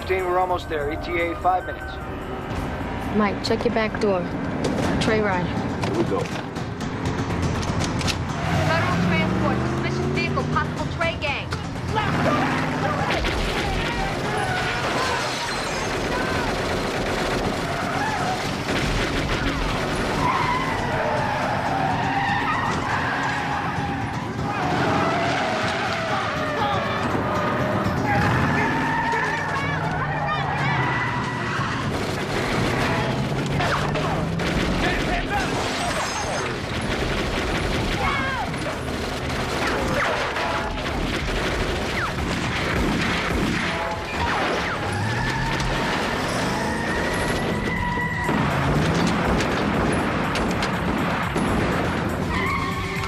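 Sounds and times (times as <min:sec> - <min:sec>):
car engines running: 0:00.0 - 0:53.0
gunshots and crashing: 0:11.0 - 0:30.3, 0:31.2 - 0:53.0
car tyres squealing: 0:19.8 - 0:36.7, 0:43.7 - 0:49.3, 0:52.2 - 0:53.0.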